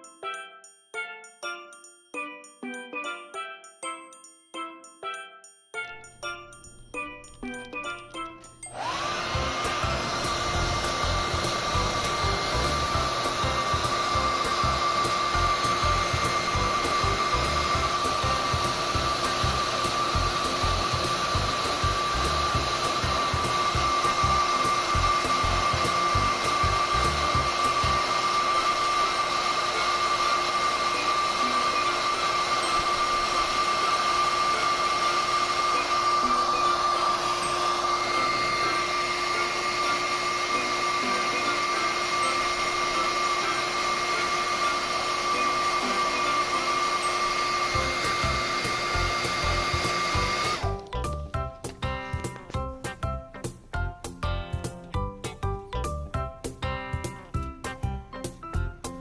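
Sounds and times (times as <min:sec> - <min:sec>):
hair dryer running: 0:08.6 - 0:52.4.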